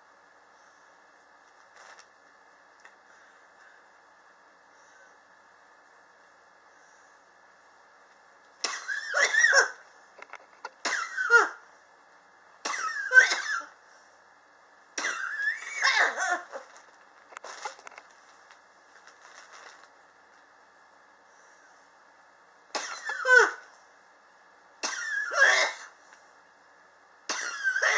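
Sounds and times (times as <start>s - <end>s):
person coughing harshly: 8.6s - 9.8s, 10.8s - 11.6s, 12.6s - 13.7s, 15.0s - 16.6s, 22.7s - 23.7s, 24.8s - 26.0s, 27.3s - 27.9s.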